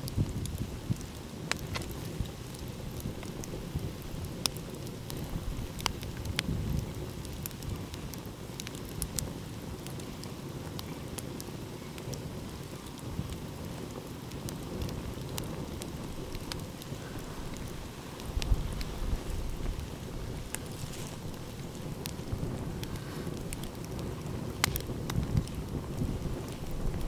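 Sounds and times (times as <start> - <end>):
sharp pops of fire: 0.0 - 27.0
wood fire crackling: 0.0 - 27.0.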